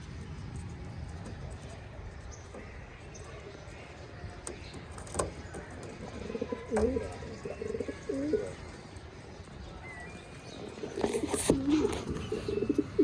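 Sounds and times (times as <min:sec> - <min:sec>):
pigeons cooing: 0:05.0 - 0:08.6, 0:10.4 - 0:13.0.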